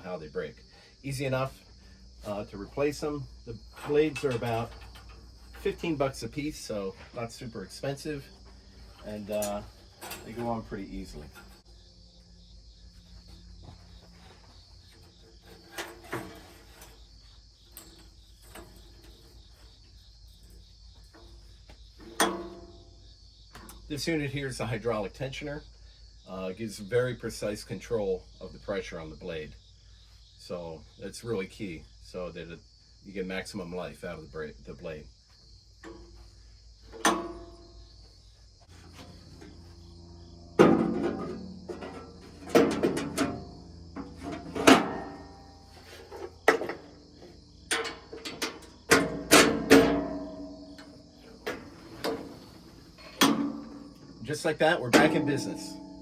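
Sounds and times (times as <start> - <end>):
crickets chirping: 0.0 - 56.0
metal clanks: 1.6 - 11.8, 13.2 - 24.0, 35.8 - 56.0
rattling knocks: 2.8 - 11.7, 20.4 - 23.9, 35.8 - 56.0
metallic ring: 38.7 - 46.2, 47.6 - 54.1, 54.8 - 56.0.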